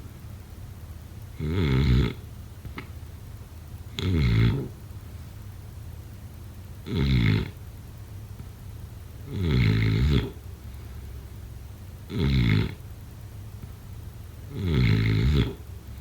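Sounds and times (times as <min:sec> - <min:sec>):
person snoring: 0:01.4 - 0:02.9, 0:09.3 - 0:10.4, 0:14.5 - 0:15.6.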